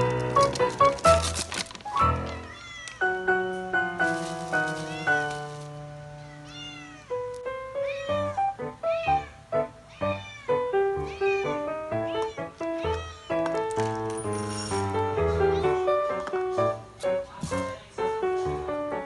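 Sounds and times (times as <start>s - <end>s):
cat meowing: 2.3s - 3.5s, 4.8s - 5.4s, 6.2s - 7.2s, 7.8s - 13.5s.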